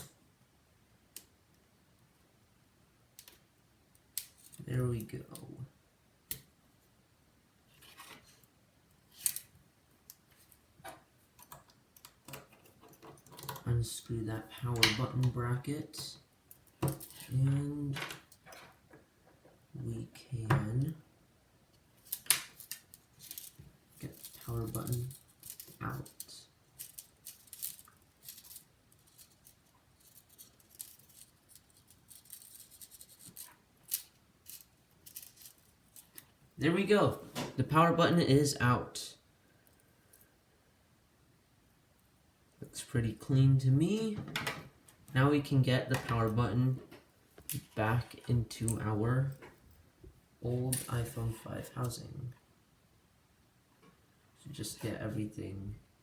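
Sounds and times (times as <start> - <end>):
small metal tools clicking and scraping: 9.1 - 9.5, 11.4 - 13.7, 16.0 - 18.8, 22.0 - 36.3.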